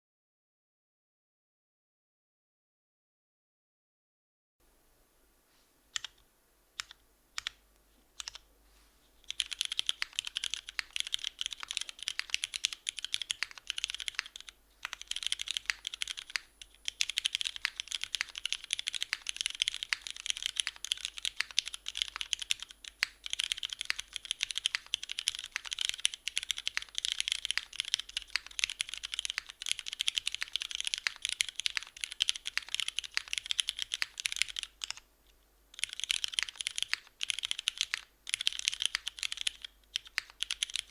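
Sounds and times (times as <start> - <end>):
mechanical keyboard typing: 6.0 - 6.2, 6.8 - 7.6, 8.2 - 8.4, 9.2 - 35.0, 35.8 - 40.9.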